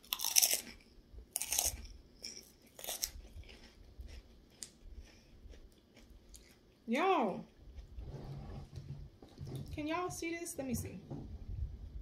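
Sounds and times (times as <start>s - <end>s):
crunching pork rinds: 0.0s - 6.8s.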